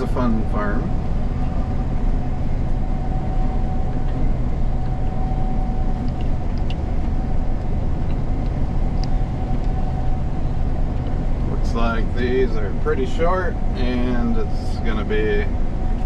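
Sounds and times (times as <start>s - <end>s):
combine harvester engine drone: 0.0s - 16.0s
constant whine: 0.0s - 16.0s.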